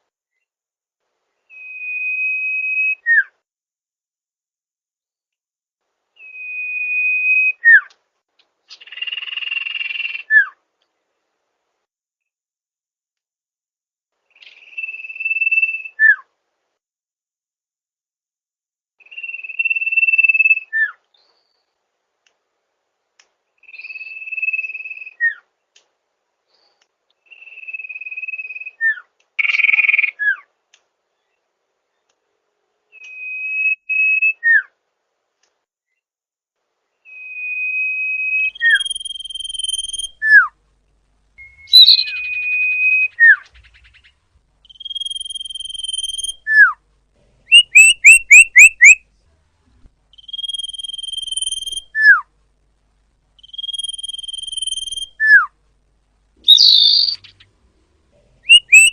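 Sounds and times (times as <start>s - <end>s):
songbird whistling: 1.5s - 3.3s, 6.2s - 7.9s, 14.4s - 16.2s, 19.0s - 21.0s, 33.0s - 34.7s, 37.0s - 40.5s, 41.4s - 46.8s, 47.5s - 49.0s, 50.2s - 52.2s, 53.4s - 55.5s, 56.4s - 57.4s, 58.4s - 58.9s
bird rasping call: 56.5s - 57.4s, 58.5s - 58.9s.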